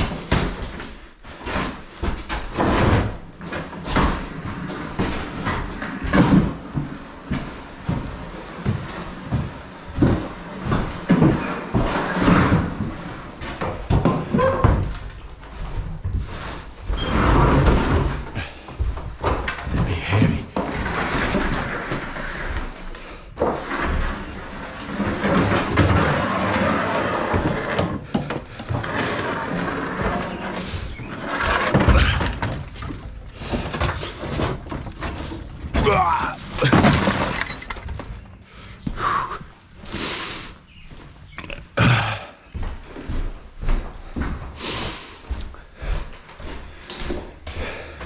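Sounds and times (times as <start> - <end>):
plaster debris thudding and rattling: 29.9 - 38.4.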